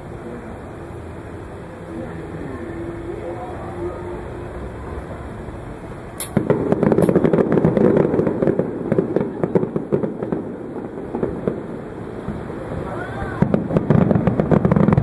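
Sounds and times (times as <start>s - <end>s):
fireworks crackling: 0.0s - 15.0s
sharp firework pops: 6.2s - 12.4s, 13.4s - 15.0s.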